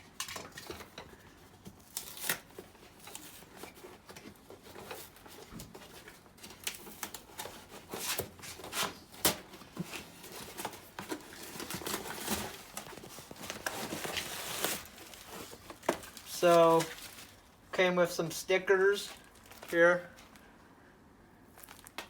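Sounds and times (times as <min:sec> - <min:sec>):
packaging crinkling and tearing: 0:01.6 - 0:17.7, 0:18.8 - 0:20.5, 0:21.5 - 0:22.0.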